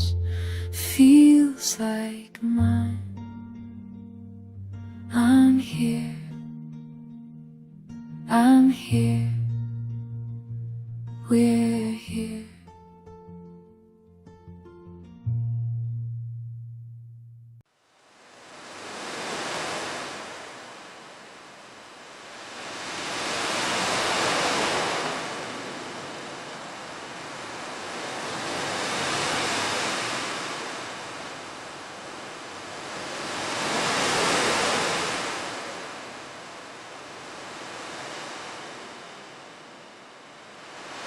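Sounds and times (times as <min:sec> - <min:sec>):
waves washing on shore: 0:17.8 - 0:41.0.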